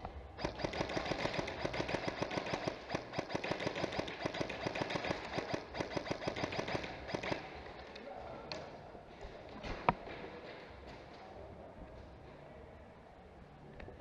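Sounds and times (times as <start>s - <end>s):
airsoft guns firing rapidly: 0.4s - 7.8s.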